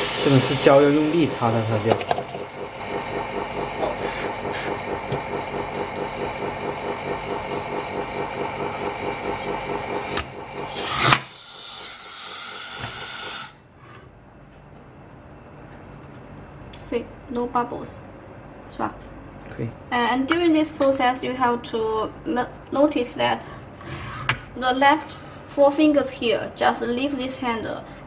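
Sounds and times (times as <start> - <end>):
small electric motor pulsing: 2.4 - 13.6.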